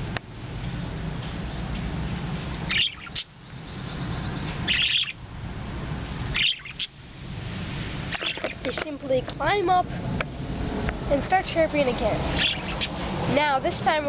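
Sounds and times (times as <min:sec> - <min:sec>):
parakeets chirping: 0:02.2 - 0:05.2, 0:06.2 - 0:07.1, 0:07.9 - 0:09.8, 0:11.2 - 0:14.0.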